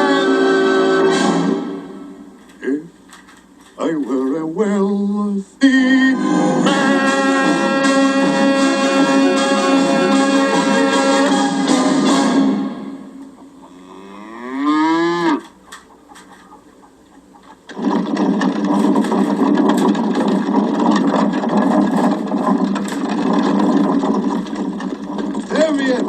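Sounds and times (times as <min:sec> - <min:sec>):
animal mooing: 0:13.4 - 0:15.6.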